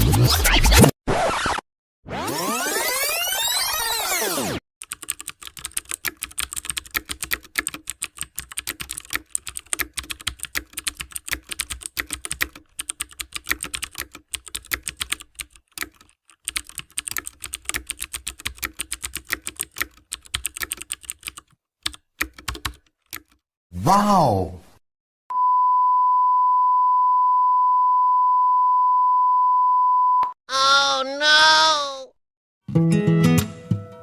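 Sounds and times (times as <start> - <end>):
keyboard typing: 4.8 - 23.4.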